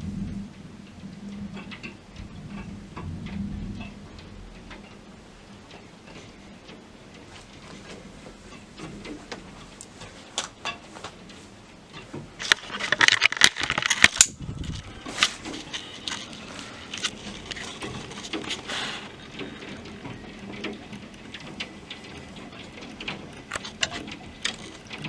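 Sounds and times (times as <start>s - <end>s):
rain pattering: 0.0s - 25.0s
sharp clicks and knocks: 0.6s - 25.0s
steady hiss: 13.7s - 25.0s.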